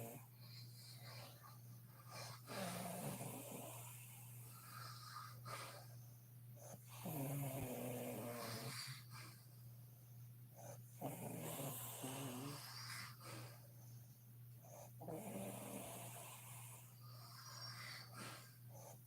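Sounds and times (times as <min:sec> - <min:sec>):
faint breathing: 0:00.0 - 0:15.2, 0:16.0 - 0:19.0
steady low hum: 0:00.0 - 0:19.0
woman snoring: 0:02.3 - 0:04.0, 0:06.9 - 0:09.1, 0:11.0 - 0:13.2, 0:15.0 - 0:18.1.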